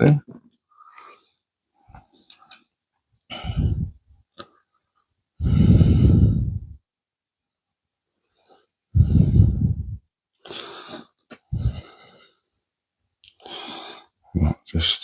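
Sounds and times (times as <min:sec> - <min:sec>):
person breathing out heavily: 0:03.3 - 0:04.0, 0:05.4 - 0:06.8, 0:09.0 - 0:12.4.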